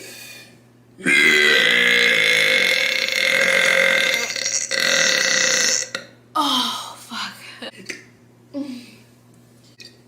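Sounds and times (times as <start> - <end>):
woman burping: 1.0 - 6.1.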